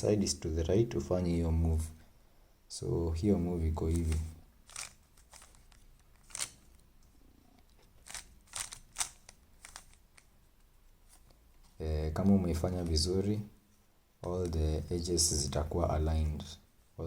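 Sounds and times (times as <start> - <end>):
puzzle cube clicks and scrapes: 3.8 - 6.8, 7.8 - 10.3.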